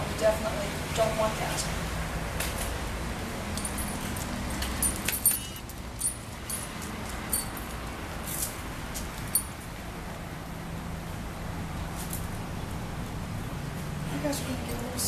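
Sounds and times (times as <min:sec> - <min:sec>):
dog collar tags jingling: 0:03.5 - 0:07.8.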